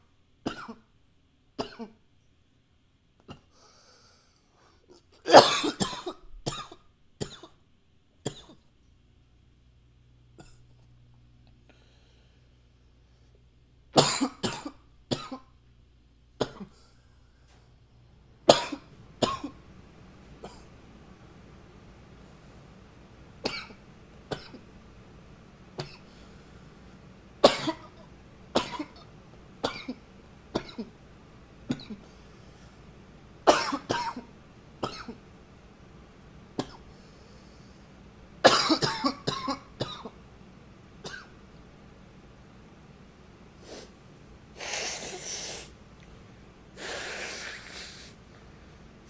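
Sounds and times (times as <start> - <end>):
man coughing: 5.3 - 7.4, 18.5 - 19.6, 27.4 - 28.0, 33.5 - 34.3, 38.4 - 40.1.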